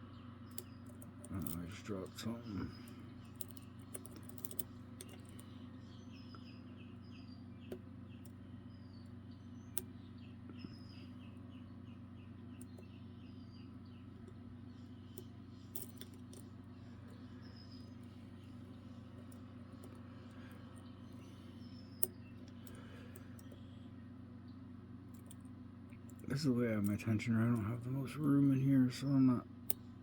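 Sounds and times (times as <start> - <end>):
low hum: 0.0 - 30.0
lock picks clicking in padlock: 3.3 - 5.4
bird chirping: 5.0 - 24.8.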